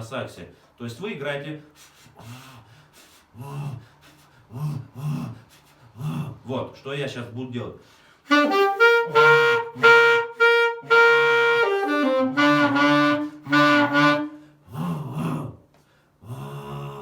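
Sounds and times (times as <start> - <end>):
saxophone growl notes: 8.3 - 15.5.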